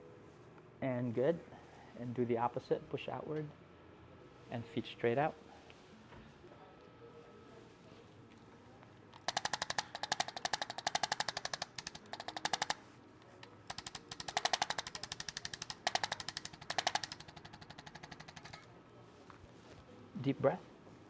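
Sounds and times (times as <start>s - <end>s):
rapid mechanical taps: 9.2s - 18.7s.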